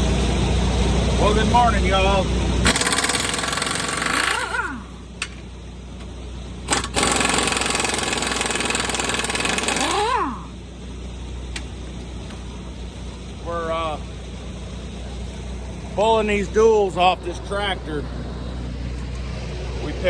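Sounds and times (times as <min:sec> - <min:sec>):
steady low hum: 0:00.0 - 0:20.0
pneumatic impact wrench: 0:02.6 - 0:05.4, 0:06.6 - 0:10.3.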